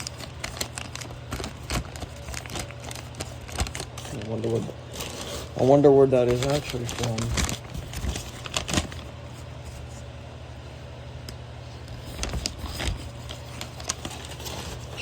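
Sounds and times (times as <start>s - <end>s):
toy packaging clicks and rustles: 0.0s - 9.0s, 12.1s - 15.0s
steady low hum: 0.0s - 15.0s.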